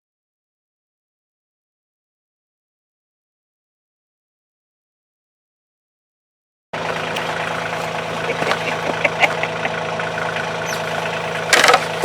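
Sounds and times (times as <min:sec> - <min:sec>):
engine idling: 0:06.8 - 0:12.0
light clicks and knocks: 0:10.7 - 0:12.0.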